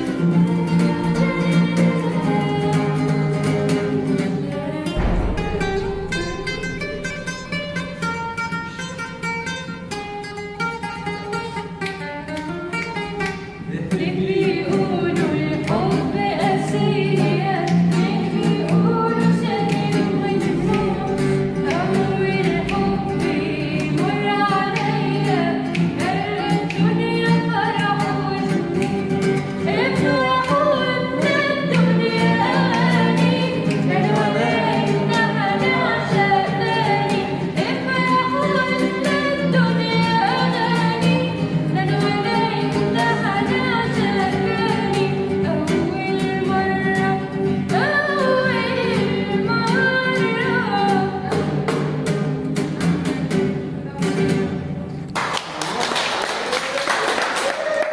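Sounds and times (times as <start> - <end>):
acoustic guitar playing: 0.0 - 55.2
person singing: 13.7 - 44.2.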